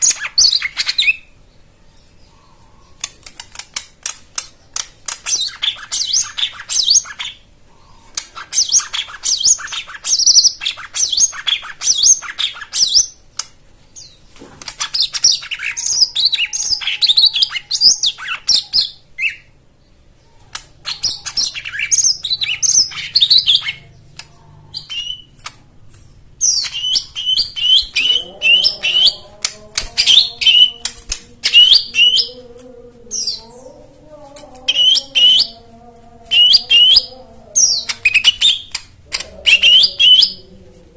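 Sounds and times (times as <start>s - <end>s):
bird chirping and trilling: 0.0s - 40.6s
low steady hum: 0.0s - 40.9s.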